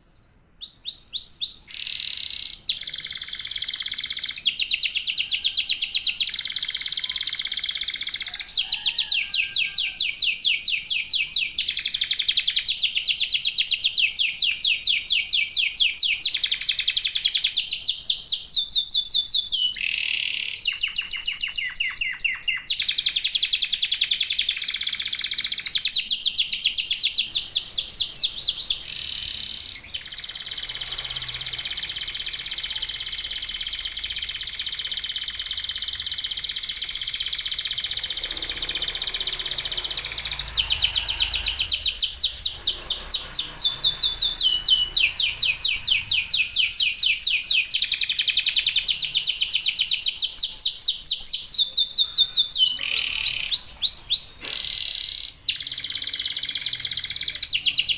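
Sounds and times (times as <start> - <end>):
canaries singing trills: 0.0 - 57.9.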